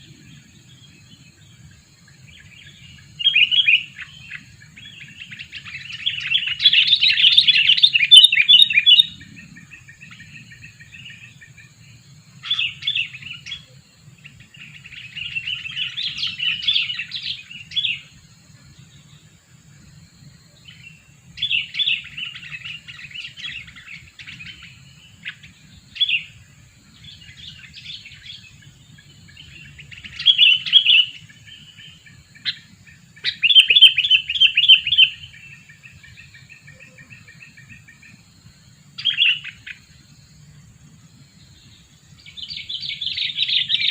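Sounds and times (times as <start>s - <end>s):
bird chattering calls: 3.2s - 10.2s.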